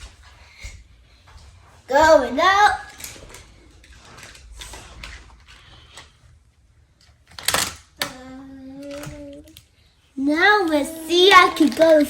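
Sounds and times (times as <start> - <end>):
toy car clicking and rattling: 7.4 - 8.2, 10.6 - 12.0.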